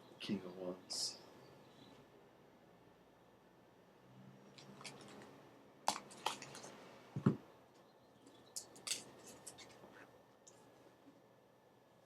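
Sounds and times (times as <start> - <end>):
cards snapping and clicking: 5.9 - 6.7, 8.6 - 9.8.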